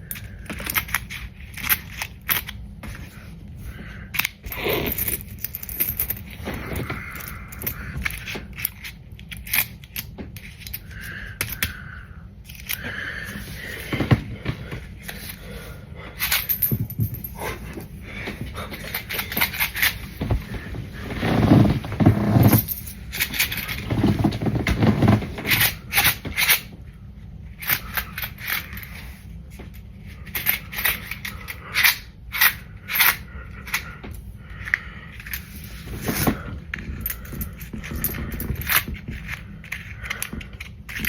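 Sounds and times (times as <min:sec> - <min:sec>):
coins clinking and scraping: 0:04.2 - 0:10.8.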